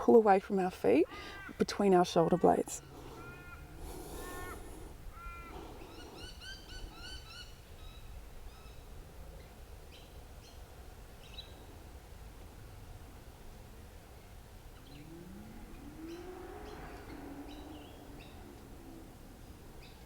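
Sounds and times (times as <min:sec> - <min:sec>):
birds chirping: 0:00.9 - 0:08.8, 0:14.7 - 0:20.0
harsh bird calls: 0:02.8 - 0:08.0, 0:14.8 - 0:20.0.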